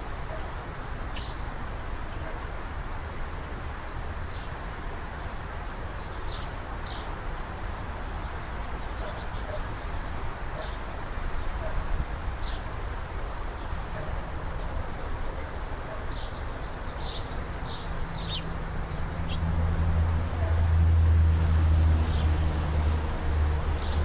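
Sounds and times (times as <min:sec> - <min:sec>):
small birds chirping: 0:16.1 - 0:19.6.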